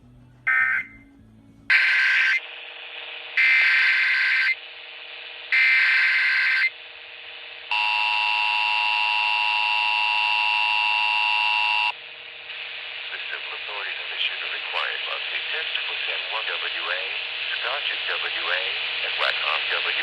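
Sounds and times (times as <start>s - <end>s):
two-tone alert signal: 0.5s - 1.1s
digital data bursts: 1.7s - 2.5s.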